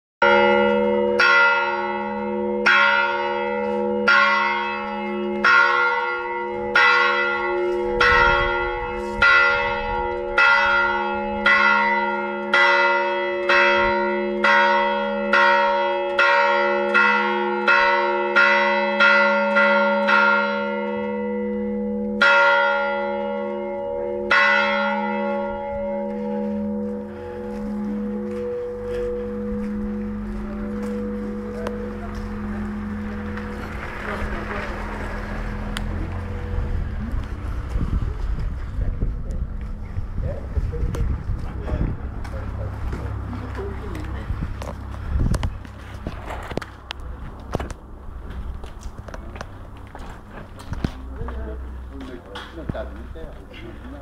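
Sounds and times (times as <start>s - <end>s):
church bell ringing: 0.2s - 37.2s.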